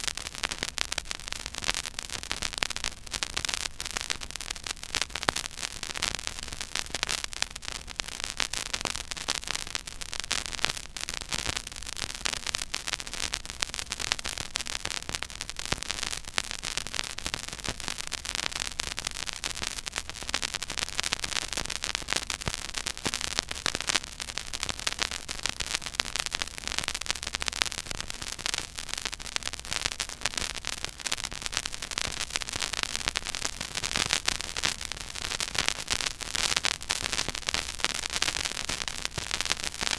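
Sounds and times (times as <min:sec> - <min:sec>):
vinyl surface crackle and pops: 0:00.0 - 0:39.9.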